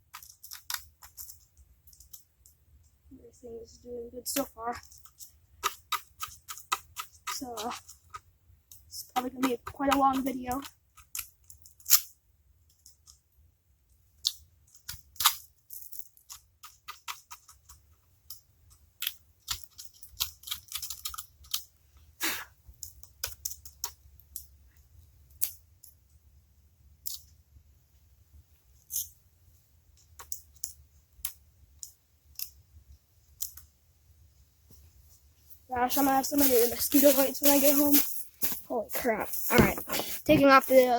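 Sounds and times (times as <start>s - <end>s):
hand tools clicking and scraping: 35.8s - 40.9s.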